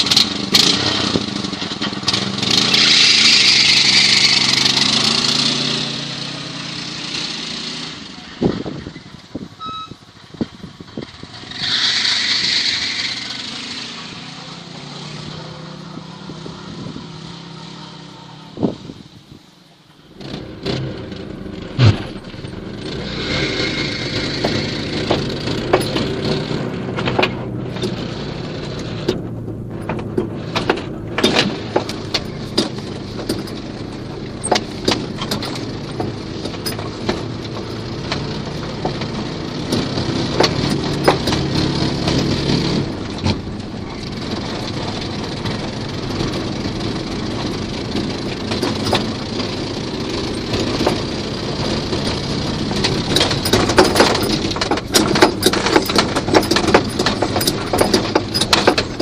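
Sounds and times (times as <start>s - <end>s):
knocks and rattles: 20.2s - 59.0s.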